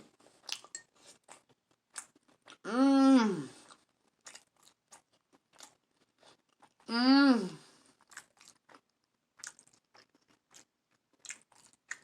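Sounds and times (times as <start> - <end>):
wet chewing and smacking: 0.0 - 2.7, 3.6 - 6.9, 7.8 - 12.0
person humming mmm: 2.7 - 3.6, 6.9 - 7.7.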